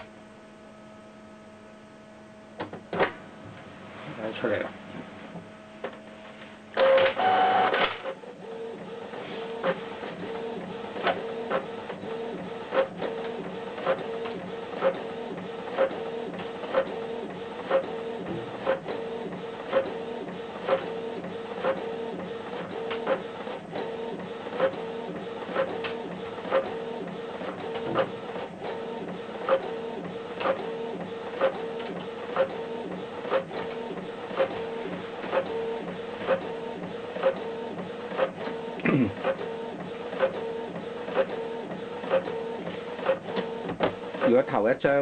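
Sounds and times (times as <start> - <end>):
print-head carriage motor whine: 5.4 - 19.7
printer mechanical burst: 6.8 - 44.5.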